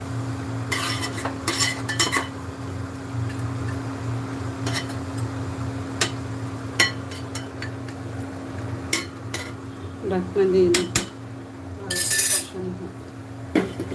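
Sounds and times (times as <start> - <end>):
metal spoon scraping a pot: 0.7 - 2.3, 11.9 - 12.6.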